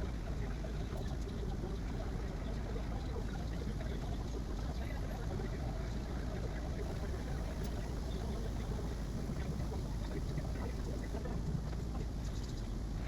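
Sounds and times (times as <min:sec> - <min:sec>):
printer fans and motors whirring: 0:06.8 - 0:12.6
faint clicks: 0:06.9 - 0:11.2.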